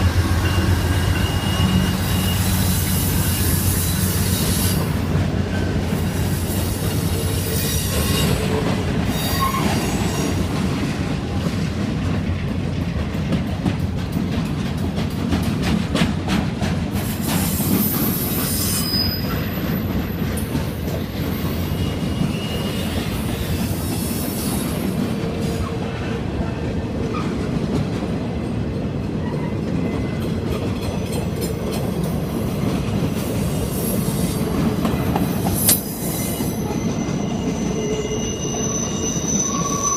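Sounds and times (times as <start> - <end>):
train wheels squealing: 0.0 - 10.6, 17.0 - 25.8, 33.2 - 39.9
train rumbling past: 0.0 - 39.9
wheels clicking over rail joints: 11.2 - 18.5.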